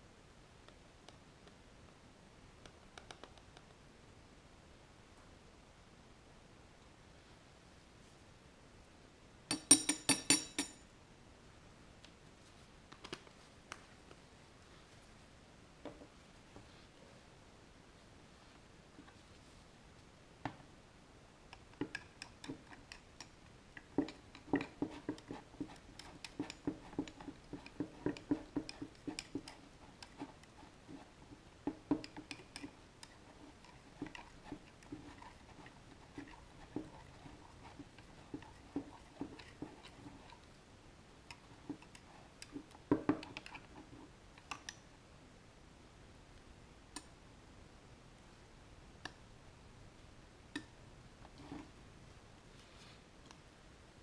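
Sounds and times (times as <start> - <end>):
tools and plastic containers tapping: 9.5 - 10.8, 21.6 - 30.3, 31.6 - 32.8, 41.3 - 43.6.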